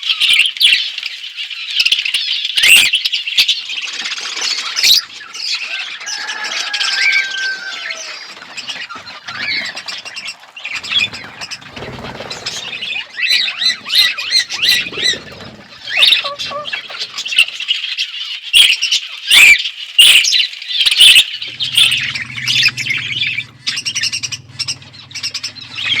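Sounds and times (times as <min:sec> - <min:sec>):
budgerigars chattering and warbling: 0:01.8 - 0:26.0
wing flutters: 0:03.7 - 0:17.9, 0:21.1 - 0:26.0
low steady hum: 0:21.4 - 0:26.0.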